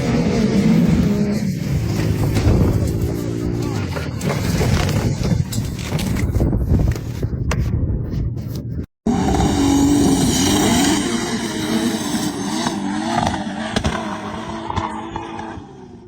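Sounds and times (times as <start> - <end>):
off-road vehicle engine revving: 0.0 - 5.3, 9.1 - 16.0.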